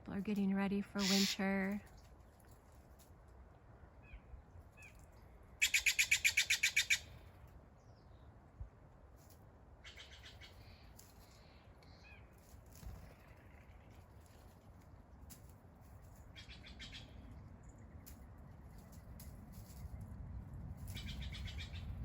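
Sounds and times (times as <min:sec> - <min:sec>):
bird rattling call: 0:01.0 - 0:01.4, 0:05.6 - 0:07.1
faint bird chirps: 0:09.8 - 0:12.4.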